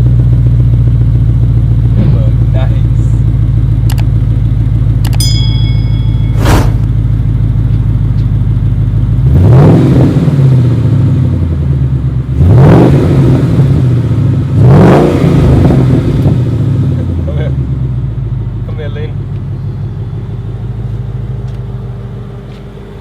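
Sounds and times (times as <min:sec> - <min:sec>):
car engine idling: 0:00.0 - 0:23.0
car engine revving: 0:06.3 - 0:18.1.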